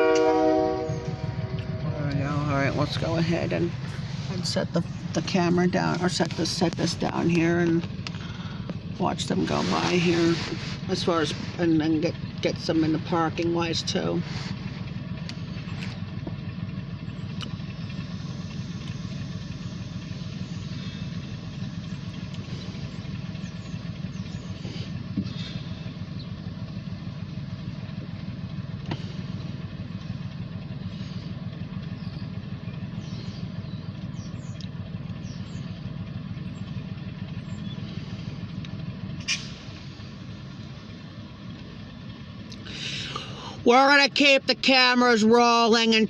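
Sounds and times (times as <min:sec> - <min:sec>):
diesel locomotive engine drone: 0:00.0 - 0:46.0
faint clicks: 0:22.0 - 0:23.6, 0:34.4 - 0:35.4.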